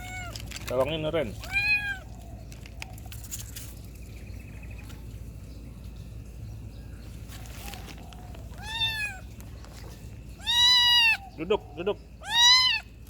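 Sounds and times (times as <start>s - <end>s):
low background hum: 0.0s - 13.0s
kitten meowing: 1.4s - 2.1s, 8.6s - 9.3s, 10.4s - 11.3s, 12.2s - 12.9s.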